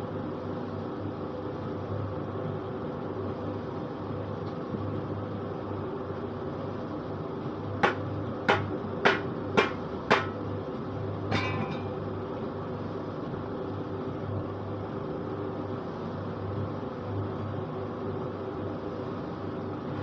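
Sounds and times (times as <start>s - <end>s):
sharp metal knocks: 7.8s - 10.5s, 11.3s - 11.9s
ringing metal clank: 11.3s - 12.0s.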